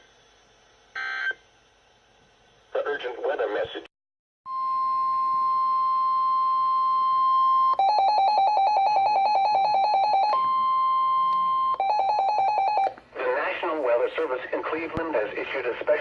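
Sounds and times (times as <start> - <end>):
long steady alert tone: 4.5 - 13.0.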